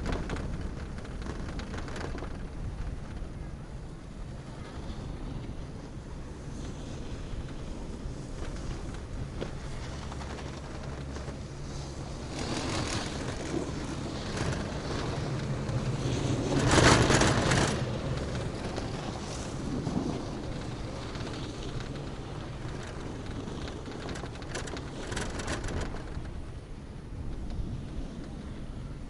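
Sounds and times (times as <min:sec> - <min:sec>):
chairlift mechanical hum: 0:00.0 - 0:29.0
rumbling rush: 0:00.0 - 0:29.0
wind noise: 0:00.0 - 0:29.0.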